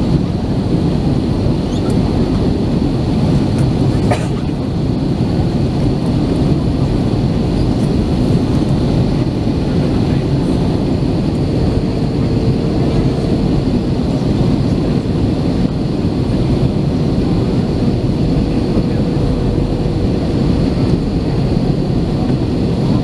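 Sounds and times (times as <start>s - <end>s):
airplane cabin rumble: 0.0s - 23.0s.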